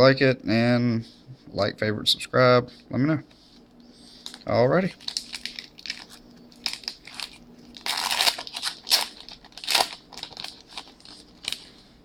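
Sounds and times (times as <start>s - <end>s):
wrapper tearing: 4.2s - 11.7s
wrapper crinkling: 4.2s - 11.8s.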